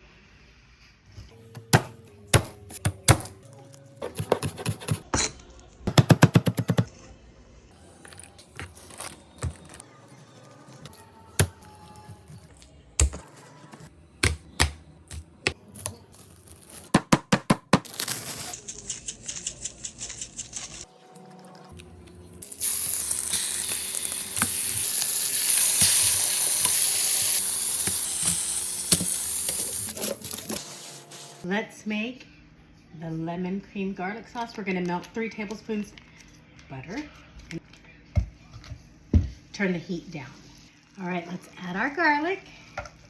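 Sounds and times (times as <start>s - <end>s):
hissing noise: 22.4s - 31.5s.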